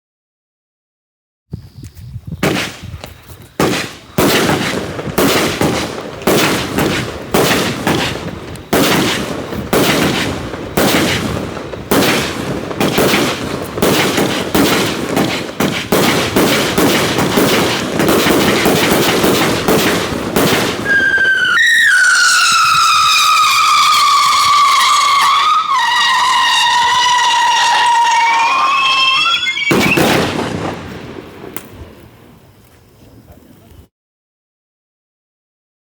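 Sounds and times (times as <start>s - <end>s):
firework shots and crackling: 2.4s - 32.5s
firework whistle falling in pitch: 20.8s - 30.6s.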